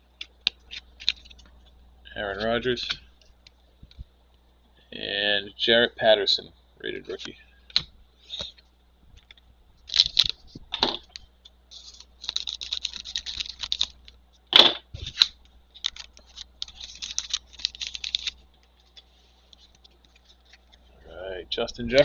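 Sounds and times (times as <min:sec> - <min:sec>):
foil wrapper crackling: 0:09.8 - 0:10.6, 0:11.8 - 0:14.2, 0:15.0 - 0:20.9.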